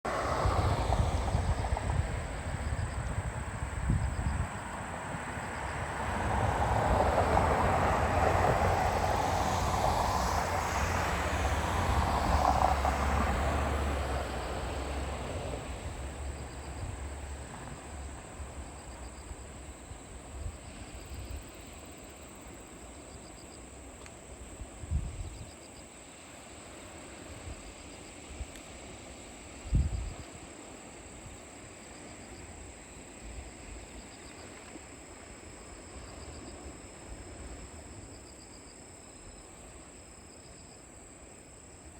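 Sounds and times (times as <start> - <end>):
loud rumbling pass-by: 0.1 - 19.1.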